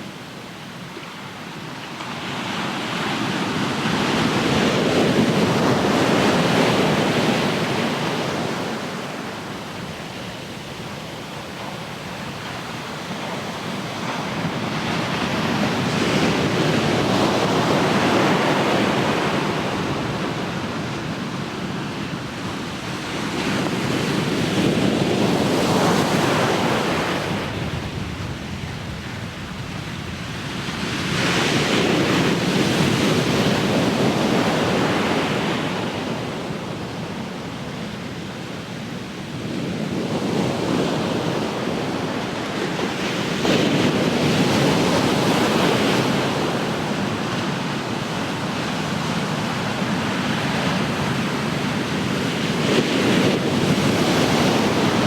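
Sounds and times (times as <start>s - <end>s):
ocean waves breaking on shore: 0.0s - 55.0s
wind on microphone: 39.3s - 55.0s.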